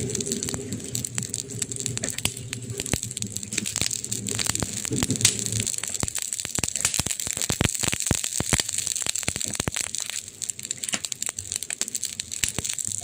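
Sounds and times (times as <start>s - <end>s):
burning wood crackling: 0.0s - 13.0s.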